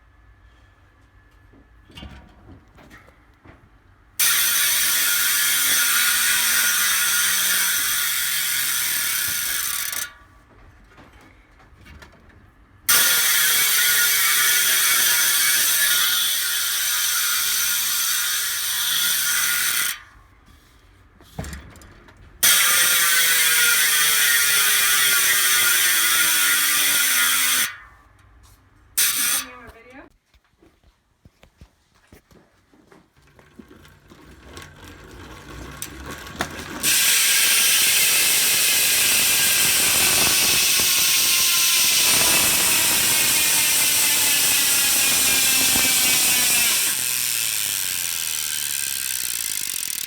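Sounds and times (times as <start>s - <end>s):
bicycle hub ratcheting buzz: 4.2s - 10.2s, 12.9s - 20.2s, 22.4s - 28.0s, 28.9s - 29.6s, 33.5s - 50.0s.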